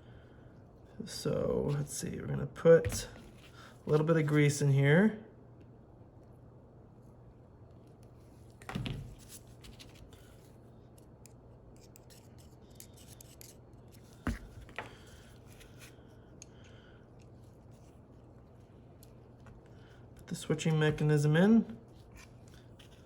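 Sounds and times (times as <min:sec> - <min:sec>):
tools clicking and scraping: 0:10.9 - 0:14.1.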